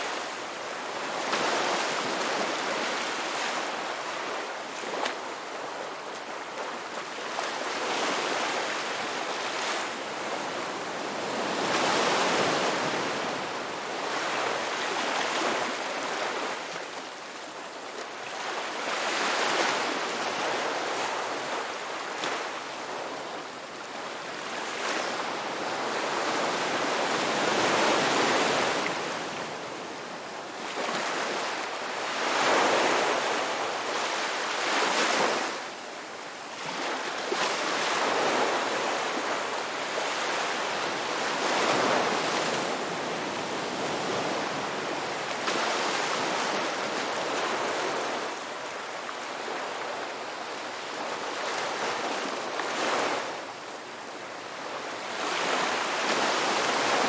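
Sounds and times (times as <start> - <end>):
ocean waves breaking on beach: 0.0 - 57.0.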